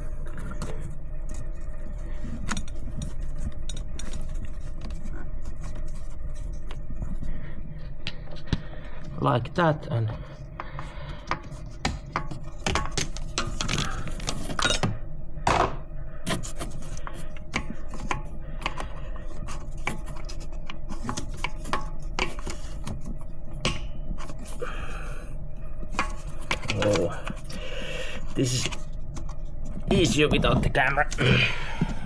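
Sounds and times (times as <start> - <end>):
clicks and knocks of hand work: 10.6 - 18.9.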